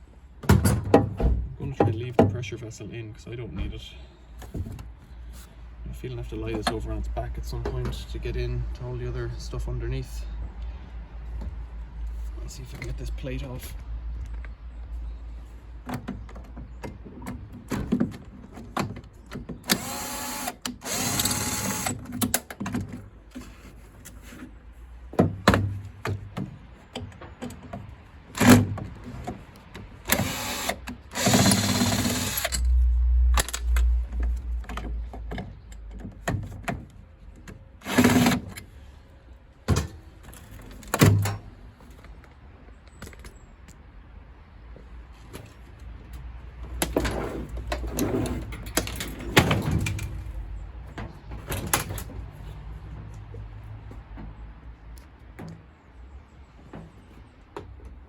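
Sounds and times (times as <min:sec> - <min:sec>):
cordless drill whirring: 0:19.7 - 0:22.0, 0:30.1 - 0:32.5.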